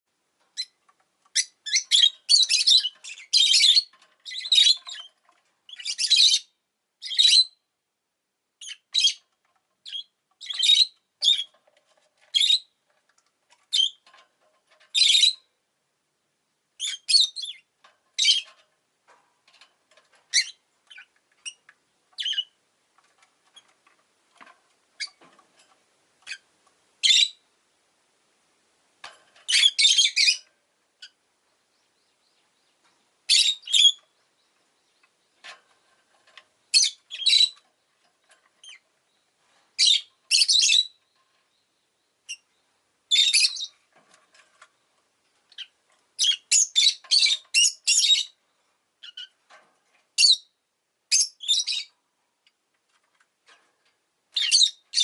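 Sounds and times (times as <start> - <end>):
lovebird chirping: 0.6 - 7.6, 8.6 - 9.2, 9.8 - 11.5, 12.3 - 12.7, 13.7 - 14.0, 14.9 - 15.5, 16.8 - 18.5, 20.3 - 21.6, 22.2 - 22.6, 26.2 - 27.4, 29.5 - 35.4, 36.7 - 37.6, 38.6 - 43.8, 45.5 - 48.4, 49.0 - 49.4, 50.2 - 50.5, 51.1 - 52.0, 54.4 - 55.0.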